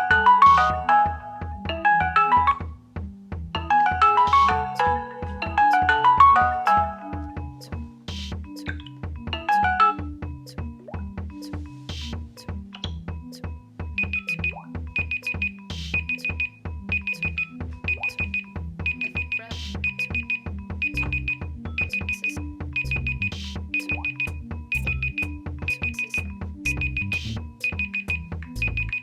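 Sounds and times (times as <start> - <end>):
electronic phone alarm tune: 0.0 - 2.7, 13.9 - 29.0.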